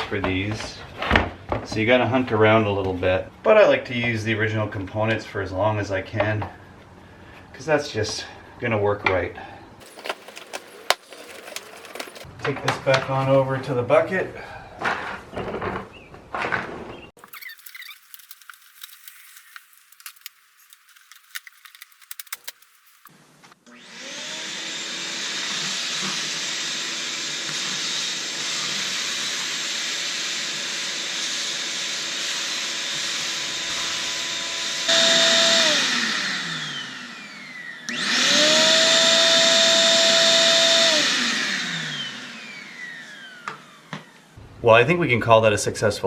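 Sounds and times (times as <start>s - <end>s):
shop vacuum motor running: 9.8s - 12.3s, 23.7s - 44.3s.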